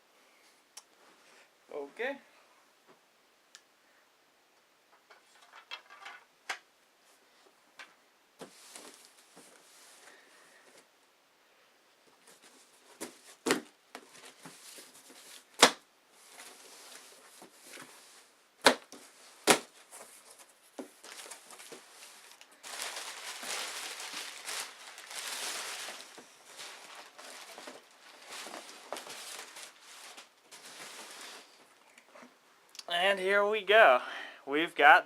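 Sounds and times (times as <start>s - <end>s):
packaging crinkling and tearing: 21.0s - 31.6s.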